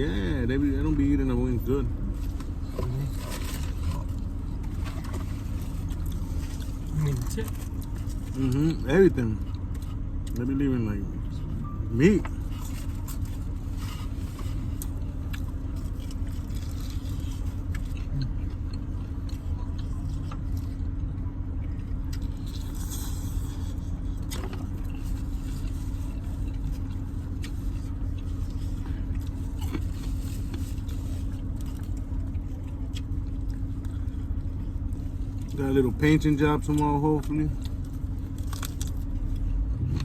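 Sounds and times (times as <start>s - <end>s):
faint hum: 0.0s - 40.0s
eating clicks and scrapes: 12.5s - 21.0s, 21.8s - 35.6s.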